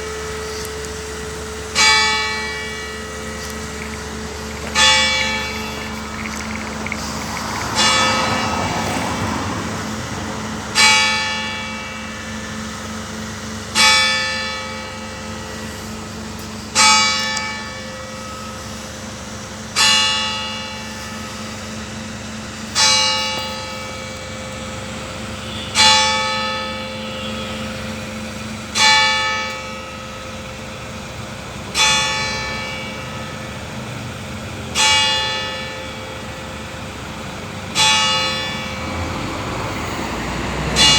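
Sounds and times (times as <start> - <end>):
church bell tolling: 37.7 - 39.0.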